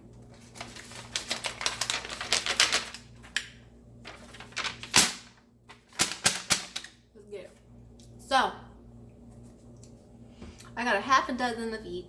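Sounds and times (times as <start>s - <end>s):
packaging crinkling: 0.3s - 7.0s.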